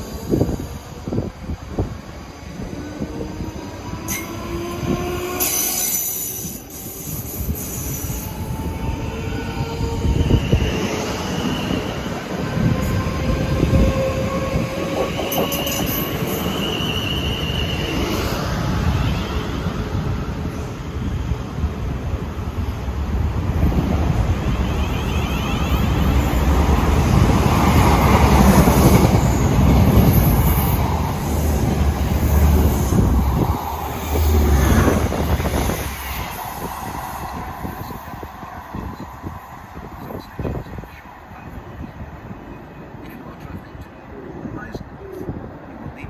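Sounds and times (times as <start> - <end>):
train rail noise: 0.0 - 46.0
high wheel squeal: 5.4 - 8.6.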